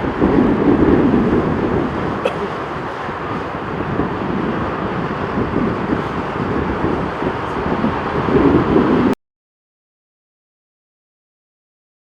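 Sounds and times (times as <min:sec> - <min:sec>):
jet airliner landing: 0:00.0 - 0:09.2
wind on microphone: 0:00.0 - 0:09.2.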